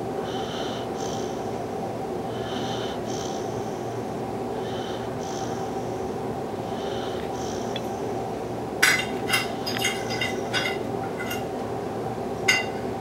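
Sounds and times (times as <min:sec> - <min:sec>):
low background hum: 0:00.0 - 0:13.0
silverware clinking against dishes: 0:08.8 - 0:11.5, 0:12.5 - 0:12.9.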